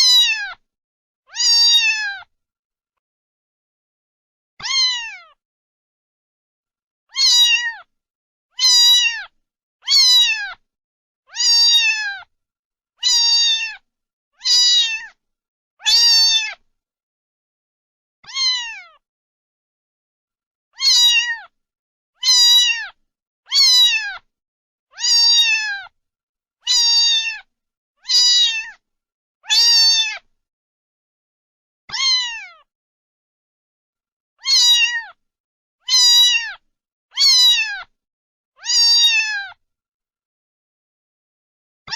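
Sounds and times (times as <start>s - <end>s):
cat meowing: 0.0s - 0.6s, 1.3s - 2.3s, 4.6s - 5.4s, 7.1s - 7.9s, 8.6s - 10.6s, 11.3s - 12.3s, 13.0s - 13.8s, 14.4s - 15.2s, 15.8s - 16.6s, 18.2s - 19.0s, 20.8s - 21.6s, 22.2s - 24.3s, 24.9s - 26.0s, 26.6s - 28.8s, 29.4s - 30.3s, 31.9s - 32.7s, 34.4s - 35.2s, 35.8s - 36.6s, 37.2s - 37.9s, 38.6s - 39.6s.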